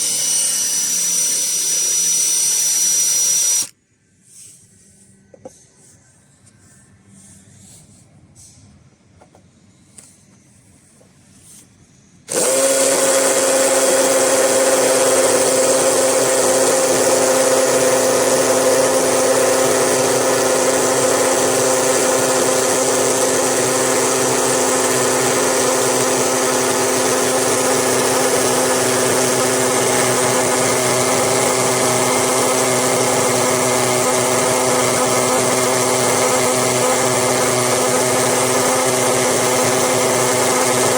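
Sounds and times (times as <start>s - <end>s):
electric drill whining: 0.0s - 3.8s, 12.3s - 40.9s.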